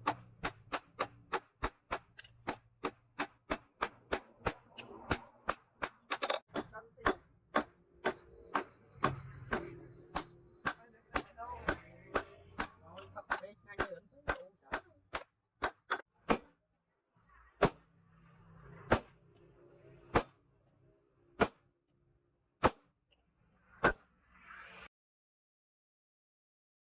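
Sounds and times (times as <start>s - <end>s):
hammer striking steel on anvil: 0.0s - 16.6s, 17.6s - 18.0s, 18.8s - 19.2s, 20.1s - 20.4s, 21.4s - 21.7s, 22.6s - 23.0s, 23.8s - 24.1s.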